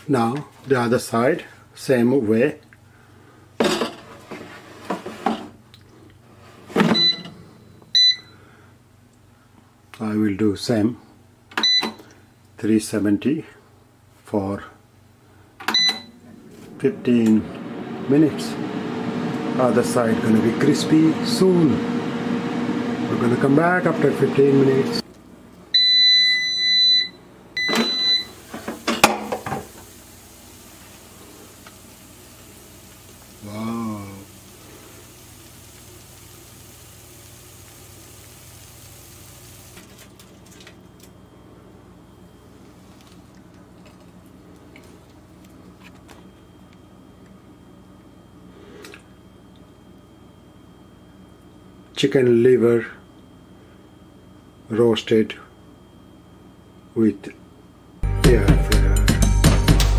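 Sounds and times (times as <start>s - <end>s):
air fryer beeping: 6.8s - 8.4s, 11.6s - 12.0s, 15.7s - 25.0s, 25.7s - 39.8s.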